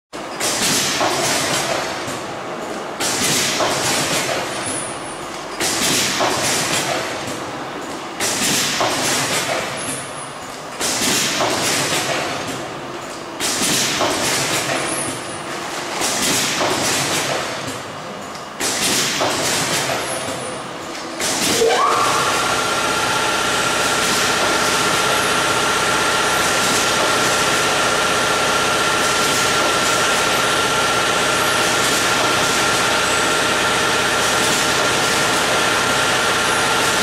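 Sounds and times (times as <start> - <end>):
machine clatter: 0.2 - 37.0.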